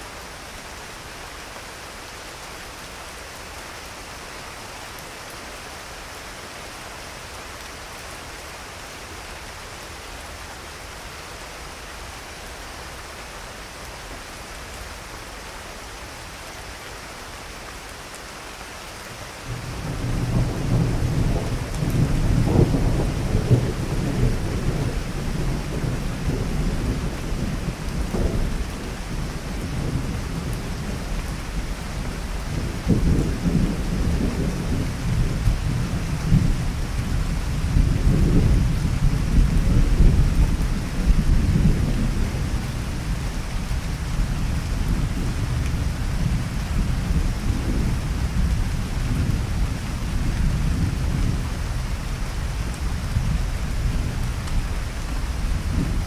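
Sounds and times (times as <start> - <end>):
steady rain: 0.0 - 56.0
thunder rumbling and cracking: 19.5 - 51.7, 52.4 - 56.0.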